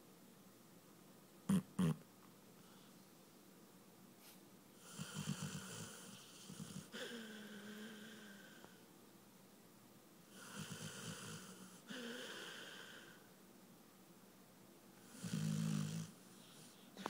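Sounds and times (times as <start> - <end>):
person snoring: 4.9 - 8.7, 10.4 - 13.2, 15.1 - 16.2
noisy breaths: 16.2 - 17.0.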